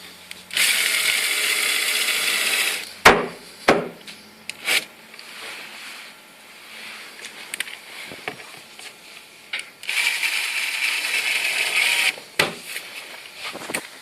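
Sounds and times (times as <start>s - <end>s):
cordless power screwdriver running: 0.5s - 2.8s, 9.8s - 12.2s.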